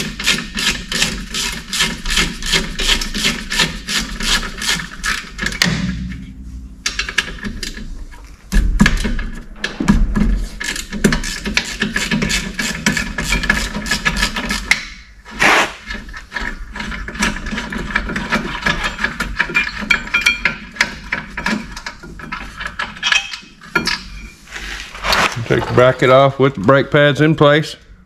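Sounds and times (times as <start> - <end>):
metal clunk: 5.5 - 8.0, 8.6 - 12.0.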